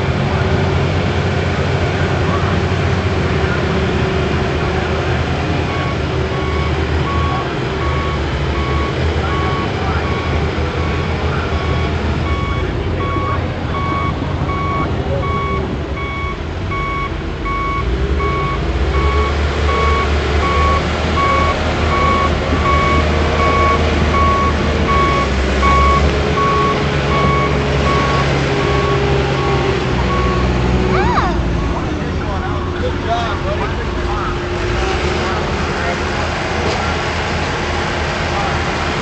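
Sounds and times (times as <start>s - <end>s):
diesel engine rumble: 0.0s - 39.0s
backup alarm beeping: 5.7s - 33.0s.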